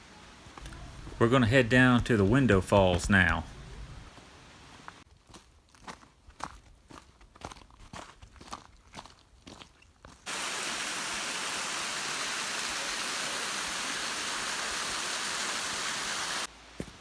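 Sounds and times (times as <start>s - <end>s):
footsteps crunching on trail: 0.4s - 10.3s, 16.8s - 17.0s
waterfall roaring: 10.3s - 16.5s.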